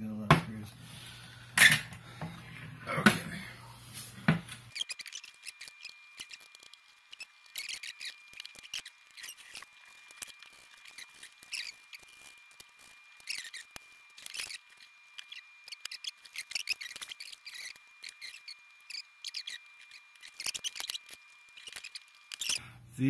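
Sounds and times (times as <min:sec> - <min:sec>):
screws turned with allen wrench: 0:04.7 - 0:22.6.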